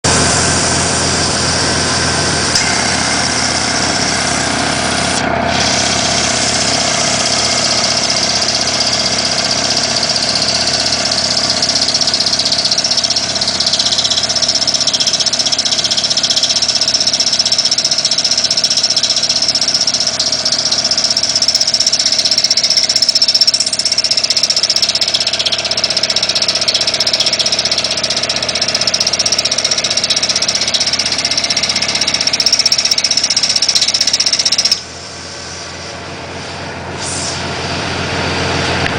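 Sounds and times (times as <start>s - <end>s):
car engine idling: 0.0s - 36.4s
high-pitched squeak: 5.5s - 34.8s.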